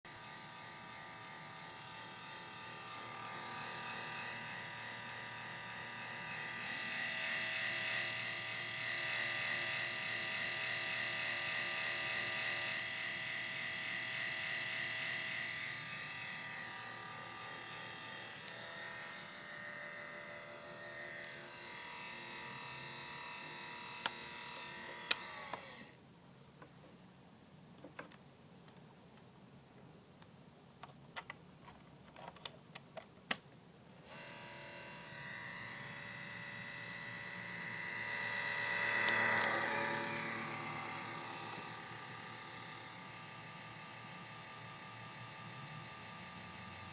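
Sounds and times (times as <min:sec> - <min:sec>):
laptop fan whirring whine: 0:00.1 - 0:26.0, 0:34.0 - 0:46.9.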